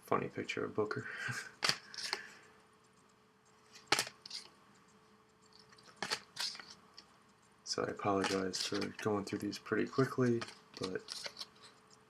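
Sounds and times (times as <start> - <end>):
cards flicking: 1.5 - 2.3, 3.6 - 4.6, 5.4 - 7.1, 7.8 - 11.8.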